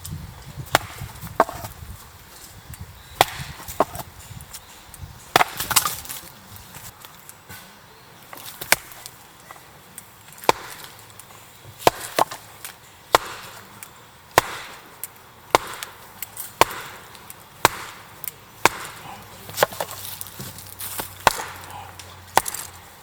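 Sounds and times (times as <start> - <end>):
blade chopping wood: 0.6 - 1.8, 3.2 - 4.1, 5.3 - 6.3, 8.3 - 9.2, 10.3 - 13.7, 14.3 - 22.8.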